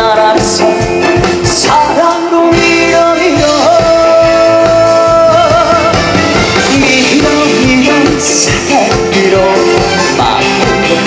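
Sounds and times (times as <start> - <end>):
live band playing: 0.0 - 11.0
person singing with vibrato: 0.0 - 11.0.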